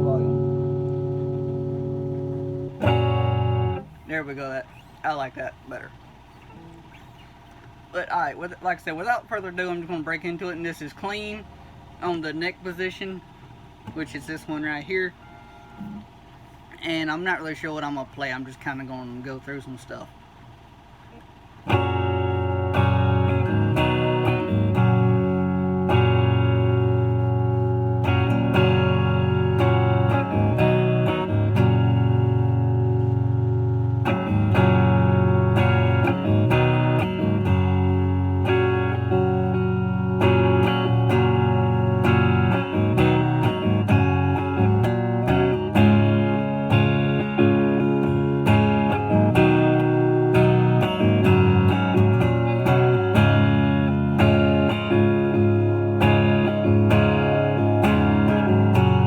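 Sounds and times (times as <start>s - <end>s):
clean electric guitar playing: 0.0s - 7.8s, 21.6s - 59.0s.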